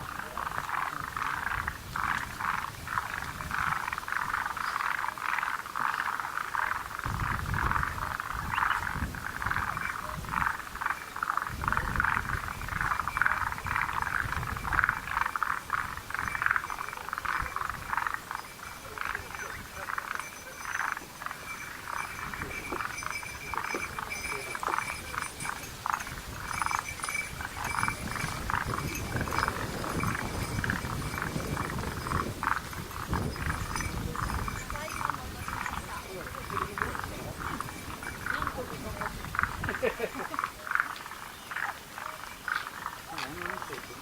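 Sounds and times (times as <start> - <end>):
frogs calling in chorus: 0.0 - 44.0.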